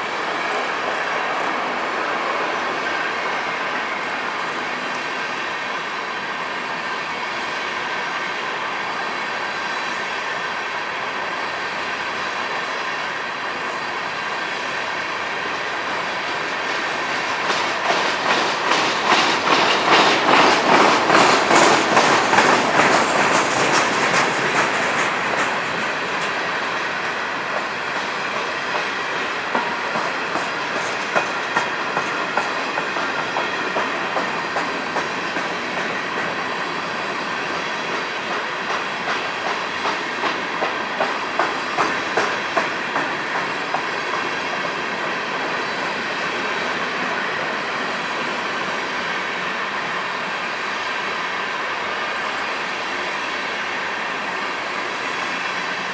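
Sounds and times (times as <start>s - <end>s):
train wheels clacking over rail joints: 16.0s - 49.6s.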